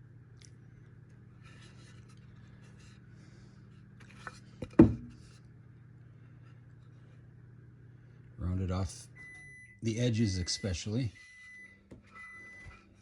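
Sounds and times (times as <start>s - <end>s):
low steady hum: 0.0s - 13.0s
faint rustling and scraping: 1.3s - 5.5s.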